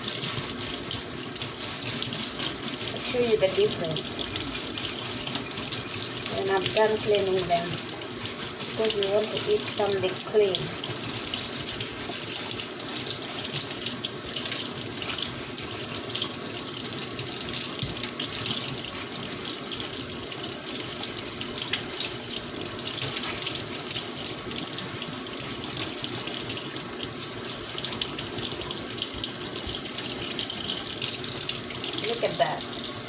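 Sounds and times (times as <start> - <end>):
potatoes being scrubbed: 0.0 - 15.5, 28.6 - 33.0
tap running into sink: 0.0 - 33.0.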